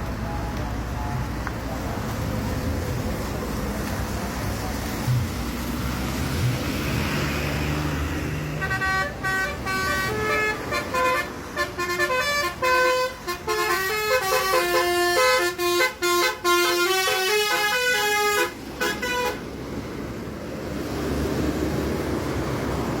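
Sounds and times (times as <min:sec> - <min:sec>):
vehicle noise: 0:00.0 - 0:23.0
bus musical horn: 0:08.4 - 0:19.6.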